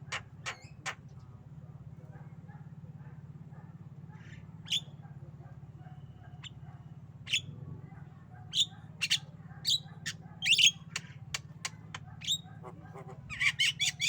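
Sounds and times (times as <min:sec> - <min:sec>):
bird giving sharp calls: 0:00.0 - 0:01.1, 0:04.2 - 0:05.0, 0:08.5 - 0:14.0.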